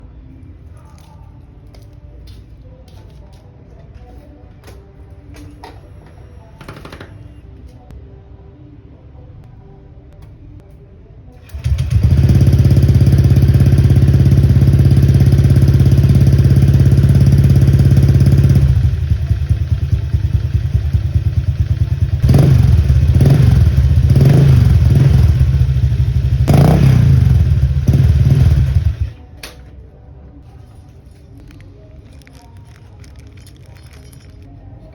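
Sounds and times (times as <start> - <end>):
scooter engine starting and revving: 11.4 - 29.2.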